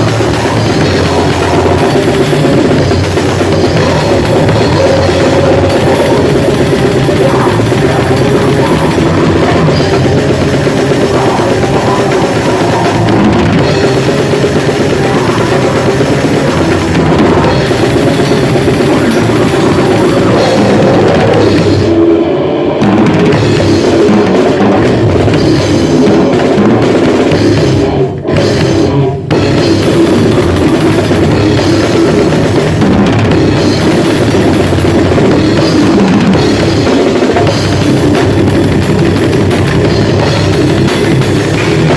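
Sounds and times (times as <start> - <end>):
bass guitar: 0.0 - 41.9
distorted guitars: 0.0 - 41.9
pounding drum kit: 0.0 - 41.9.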